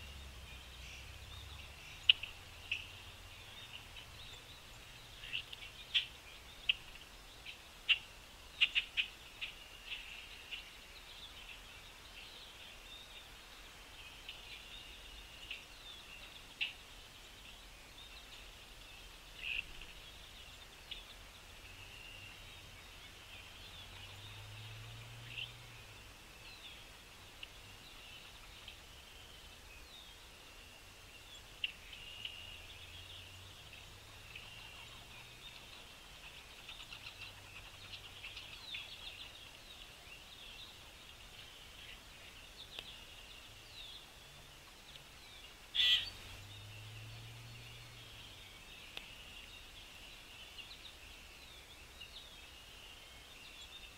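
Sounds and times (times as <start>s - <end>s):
songbirds chirping and twittering: 0.0s - 53.9s.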